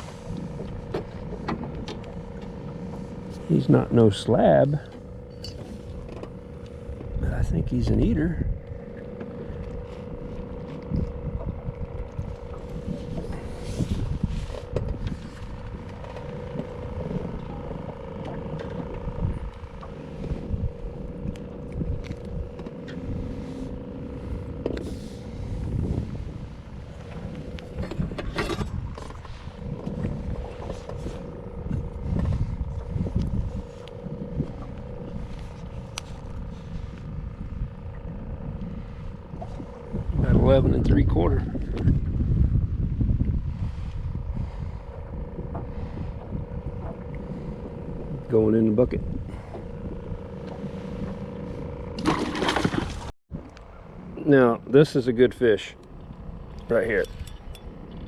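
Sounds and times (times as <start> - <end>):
knocks and rubbing in boat: 0.0 - 53.1
trolling motor humming: 0.0 - 58.0.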